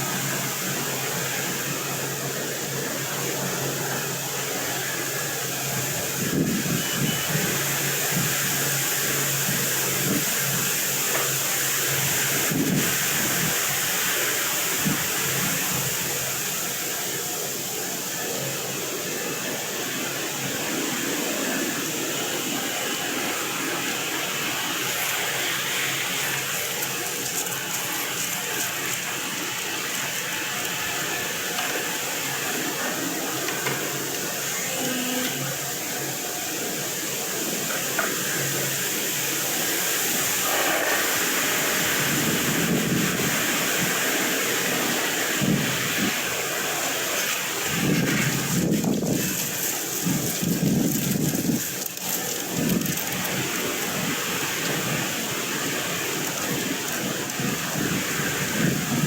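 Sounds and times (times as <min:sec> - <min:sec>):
wind buffeting microphone: 0:05.7 - 0:08.6, 0:12.2 - 0:13.9, 0:40.4 - 0:59.0.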